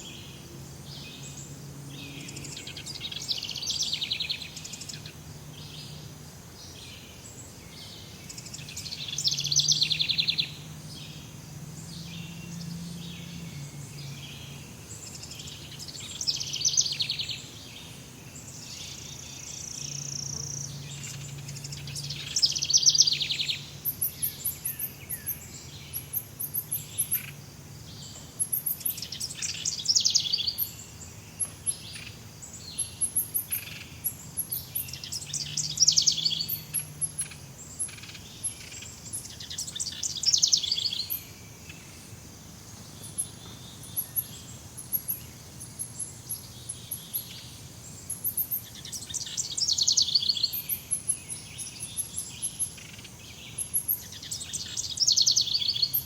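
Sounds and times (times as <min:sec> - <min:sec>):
high bird chirps: 0:48.1 - 0:56.0.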